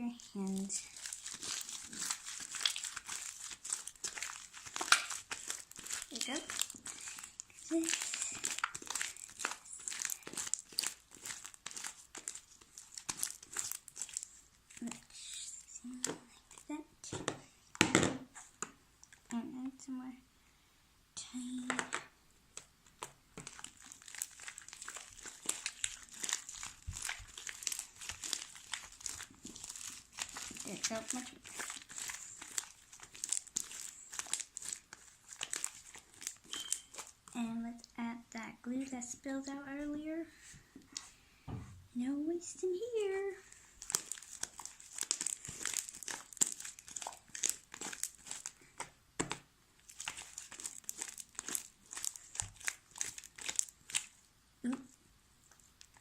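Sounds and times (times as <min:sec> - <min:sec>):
slime sticky crackles and clicks: 0:00.4 - 0:15.0, 0:22.5 - 0:37.3, 0:43.8 - 0:48.9, 0:49.8 - 0:54.2.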